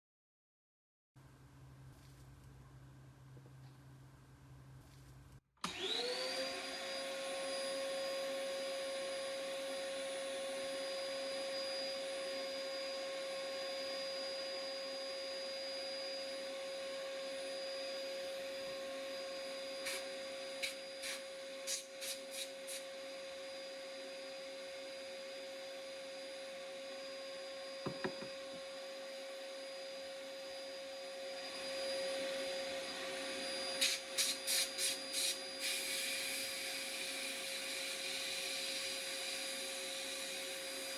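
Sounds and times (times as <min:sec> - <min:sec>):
small electric motor whirring: 0:17.3 - 0:25.1, 0:30.4 - 0:40.9.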